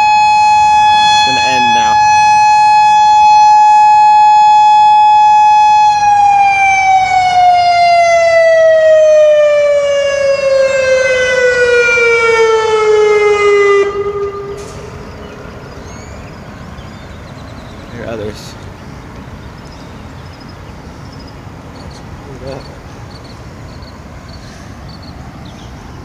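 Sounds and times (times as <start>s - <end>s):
warning siren winding down: 0.0s - 16.2s.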